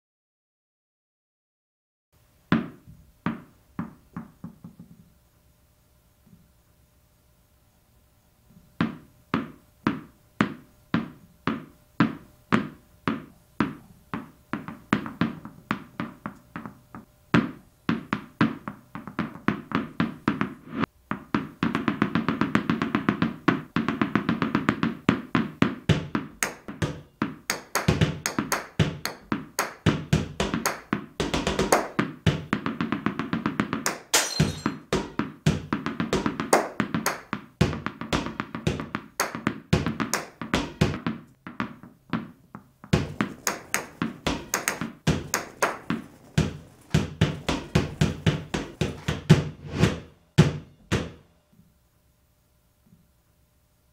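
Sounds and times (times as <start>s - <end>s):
percussive knocking music: 25.6s - 42.3s, 42.9s - 51.2s.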